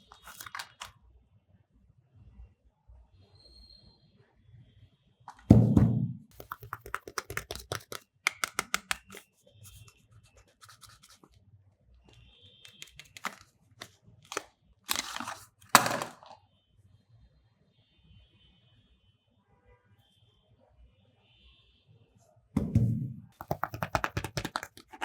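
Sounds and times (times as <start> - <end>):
packaging crinkling clicks: 0.1 - 0.9, 12.7 - 13.5, 14.3 - 16.3.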